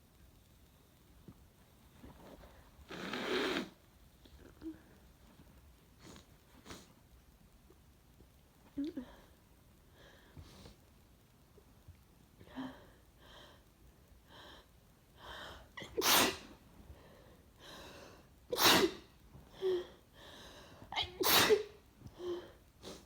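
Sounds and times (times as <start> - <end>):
woman sneezing: 15.8 - 16.5, 18.6 - 19.1, 21.0 - 21.8.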